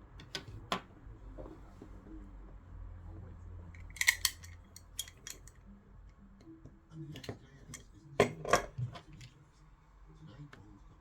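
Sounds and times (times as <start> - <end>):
clinks of tools and parts: 3.8 - 5.6, 7.2 - 9.3.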